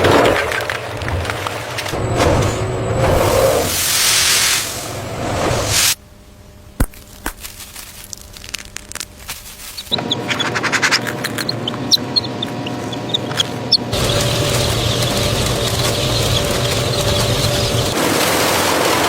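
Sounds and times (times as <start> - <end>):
poultry house hum: 0.0 - 19.0
chicks peeping: 9.7 - 18.0.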